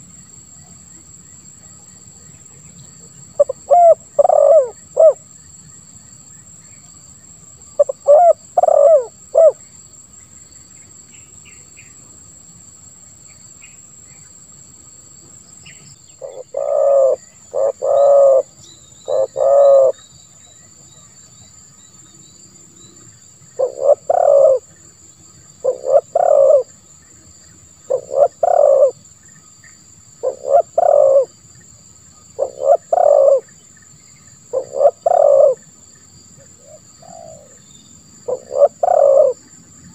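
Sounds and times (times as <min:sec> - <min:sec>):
dove cooing: 0:03.4 - 0:05.2, 0:07.8 - 0:09.6, 0:16.2 - 0:20.0, 0:23.6 - 0:24.7, 0:25.6 - 0:26.7, 0:27.9 - 0:29.0, 0:30.2 - 0:31.3, 0:32.4 - 0:33.5, 0:34.5 - 0:35.7, 0:36.6 - 0:37.6, 0:38.3 - 0:39.5.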